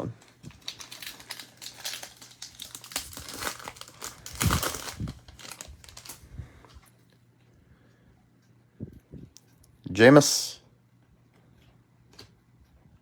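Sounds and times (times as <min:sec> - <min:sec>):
plastic wrapper tearing and crinkling: 0:00.0 - 0:06.8.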